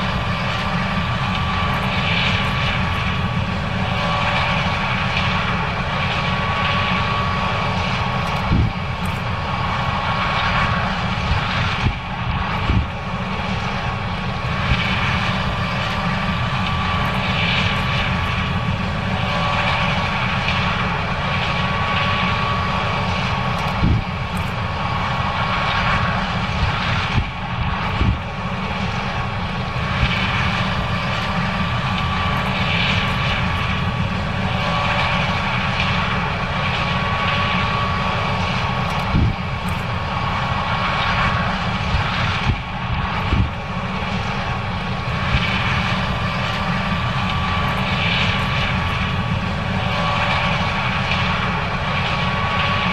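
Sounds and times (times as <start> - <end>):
combine harvester drone: 0.0 - 52.9.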